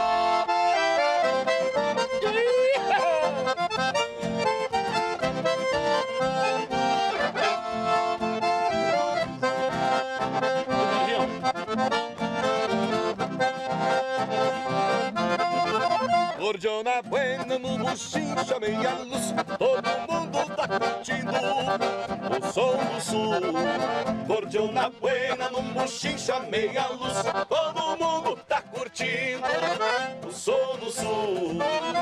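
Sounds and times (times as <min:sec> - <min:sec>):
accordion dance tune: 0:00.0 - 0:32.0.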